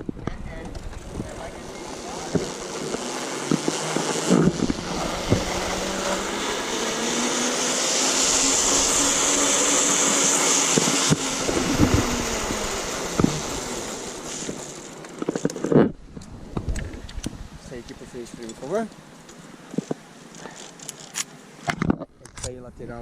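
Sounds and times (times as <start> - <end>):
pulleys whirring on cable: 0.7 - 15.7.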